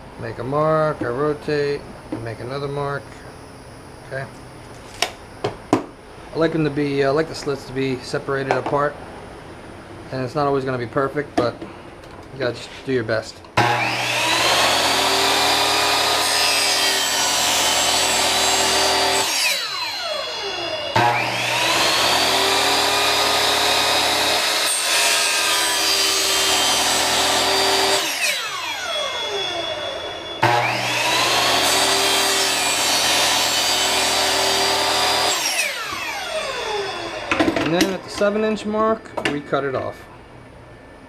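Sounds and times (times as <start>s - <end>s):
miter saw cutting plastic pipe: 13.6s - 38.4s.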